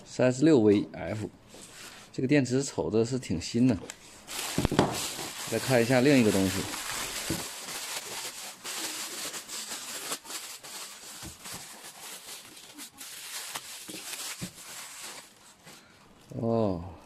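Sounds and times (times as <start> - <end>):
packaging rustling and crinkling: 3.9 - 16.4.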